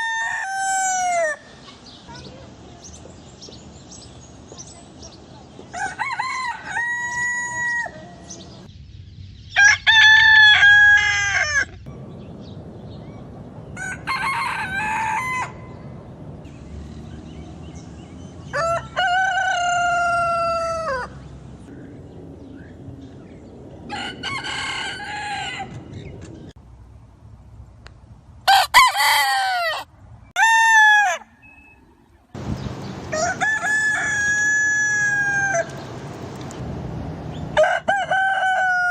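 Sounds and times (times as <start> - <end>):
roosters crowing: 0.0 - 1.6, 5.7 - 8.4, 9.5 - 11.9, 13.7 - 15.9, 18.4 - 21.3, 23.9 - 26.1, 28.5 - 31.5, 32.4 - 36.1, 37.5 - 38.9.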